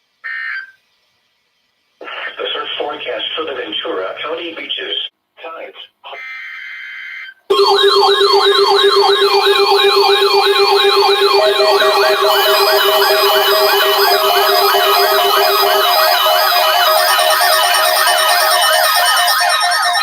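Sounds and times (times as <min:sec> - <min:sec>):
electronic alarm siren yelp: 0:07.5 - 0:20.0
pulsed beeping tones: 0:07.5 - 0:20.0.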